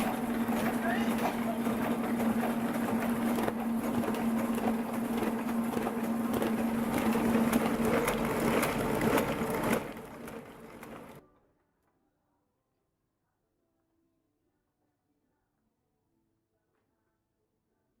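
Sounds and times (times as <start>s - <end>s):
printing press clatter: 0.0s - 11.2s
printing press hum: 0.0s - 11.2s.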